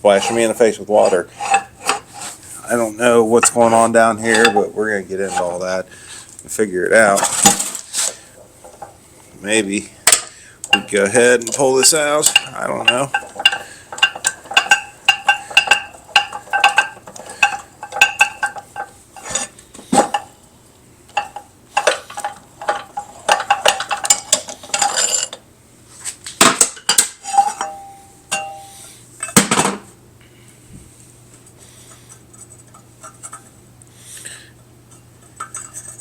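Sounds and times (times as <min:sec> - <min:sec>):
metal tools clinking and knocking: 0:00.1 - 0:02.0, 0:03.4 - 0:05.6, 0:10.0 - 0:20.4, 0:21.1 - 0:25.4, 0:26.6 - 0:29.4, 0:34.9 - 0:36.0.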